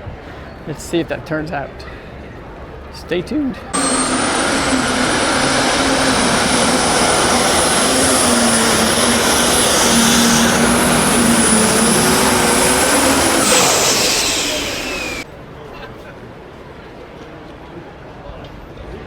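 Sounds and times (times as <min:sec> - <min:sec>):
engine running at full power: 0:03.8 - 0:15.2
high whine gliding down: 0:03.8 - 0:15.2.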